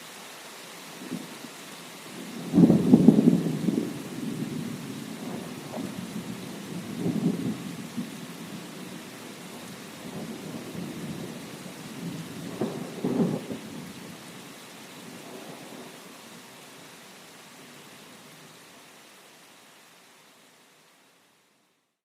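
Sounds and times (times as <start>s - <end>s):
steady rain: 0.0s - 22.0s
thunder crackling and rumbling: 2.1s - 14.2s.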